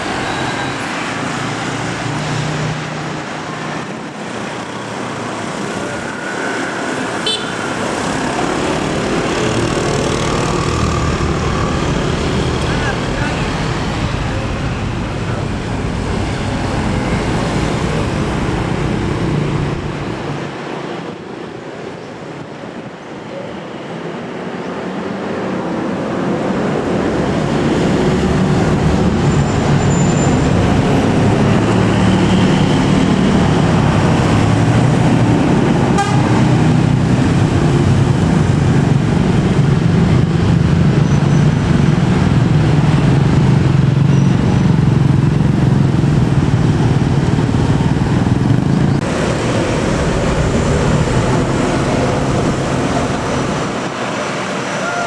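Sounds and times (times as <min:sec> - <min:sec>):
bus diesel engine running: 0:06.8 - 0:20.8, 0:27.7 - 0:55.0.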